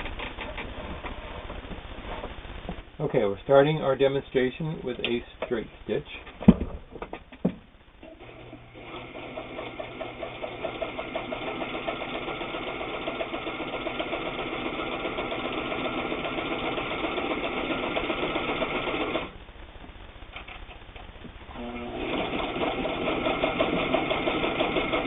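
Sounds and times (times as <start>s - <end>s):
sewing machine stitching: 8.0s - 19.3s, 21.5s - 25.0s.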